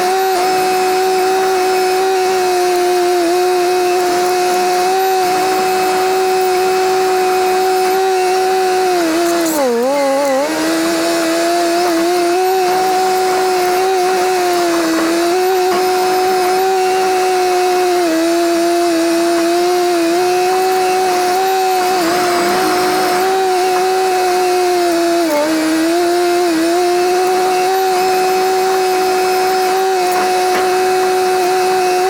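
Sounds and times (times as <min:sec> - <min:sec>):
bulldozer engine droning: 0:00.0 - 0:32.0.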